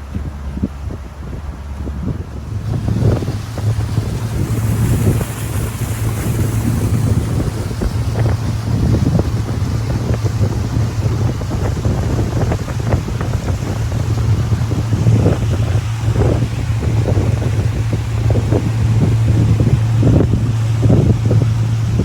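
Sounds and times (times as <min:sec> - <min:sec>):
boat motor humming: 0:00.0 - 0:22.0
water slapping hull: 0:00.0 - 0:22.0
wind buffeting microphone: 0:00.0 - 0:22.0.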